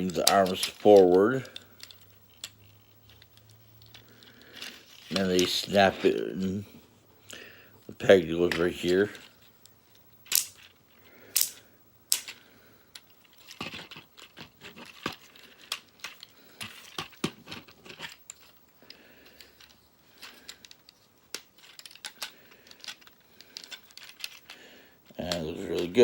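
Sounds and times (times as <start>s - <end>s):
plastic toy parts clicking: 0.0s - 6.1s, 8.5s - 26.0s
sharp plastic snaps: 10.2s - 12.4s.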